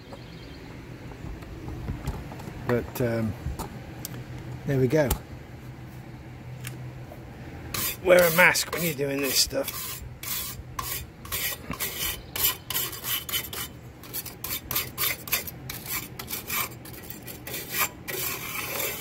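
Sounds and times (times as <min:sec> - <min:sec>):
hand scrubbing brake parts: 0:07.7 - 0:19.0.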